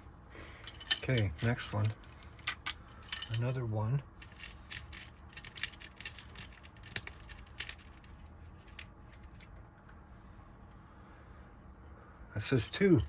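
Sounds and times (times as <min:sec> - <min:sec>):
small metal clicks and rattling: 0:00.6 - 0:03.5, 0:04.2 - 0:09.6.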